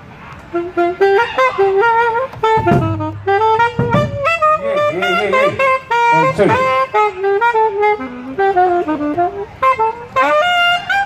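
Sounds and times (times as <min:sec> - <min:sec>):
wind instrument playing fast line: 0:00.4 - 0:11.0
low thumps: 0:00.6 - 0:07.9.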